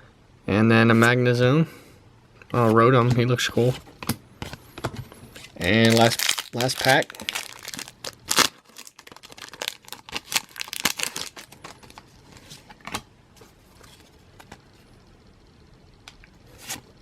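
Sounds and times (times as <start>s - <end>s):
foil wrapper tearing and crinkling: 5.5s - 12.0s.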